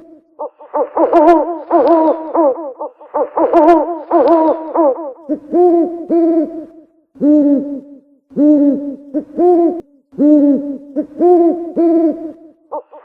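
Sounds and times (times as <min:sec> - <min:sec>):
owl hooting: 0:00.0 - 0:13.0.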